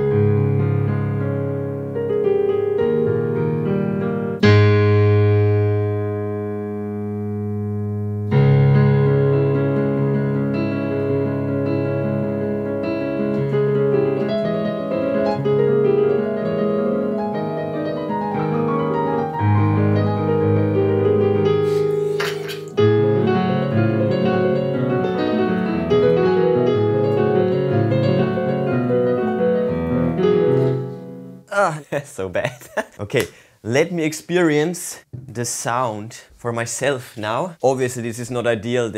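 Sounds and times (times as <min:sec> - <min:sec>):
piano piece: 0:00.0 - 0:31.7.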